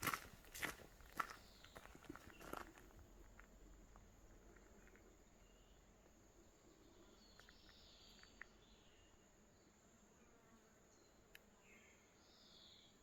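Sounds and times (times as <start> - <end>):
faint bird chirps: 4.7 - 9.8, 10.9 - 13.0.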